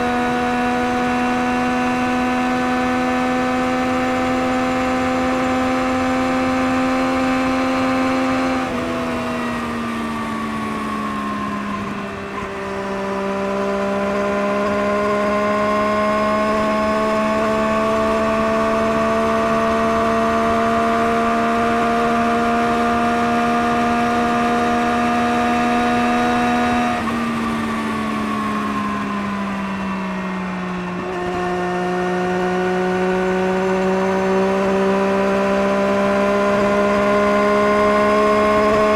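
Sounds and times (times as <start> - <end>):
engine revving with exhaust drone: 0.0 - 29.9, 30.7 - 38.9.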